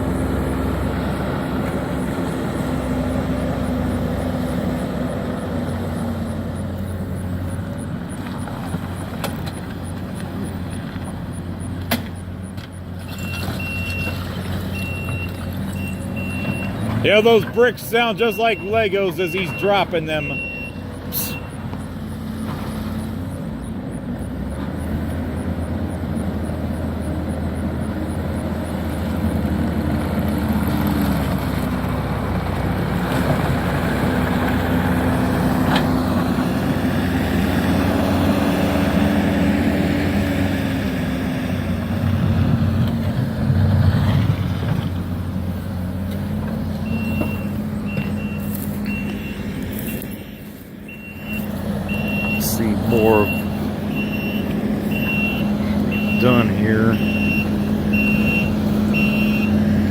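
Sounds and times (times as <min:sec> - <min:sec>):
excavator diesel engine under load: 0:00.0 - 0:59.9
backup alarm beeping: 0:14.8 - 0:21.7, 0:46.9 - 0:59.6.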